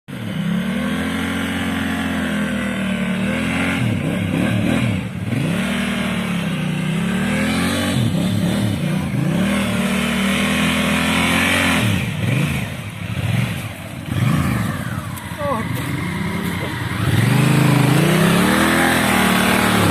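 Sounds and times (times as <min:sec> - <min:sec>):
motorcycle engine revving: 0:00.1 - 0:19.9.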